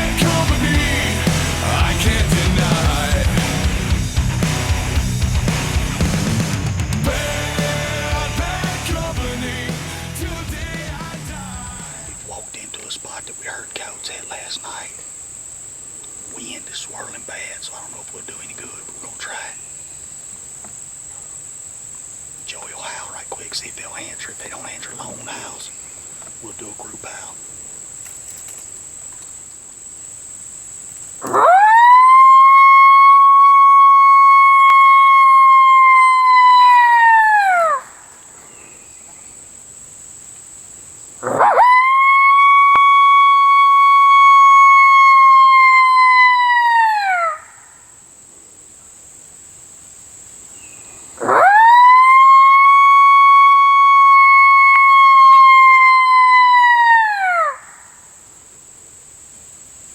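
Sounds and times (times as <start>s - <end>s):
crickets chirping: 0.0s - 59.9s
coyote howler call: 31.2s - 38.2s, 41.2s - 47.9s, 51.2s - 58.0s.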